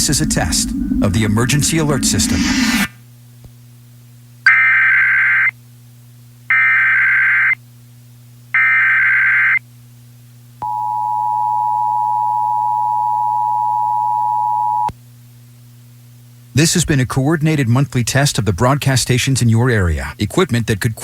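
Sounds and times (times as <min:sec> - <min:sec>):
faint low hum: 0:00.0 - 0:04.4, 0:10.2 - 0:18.6
two-tone attention signal: 0:10.6 - 0:14.9.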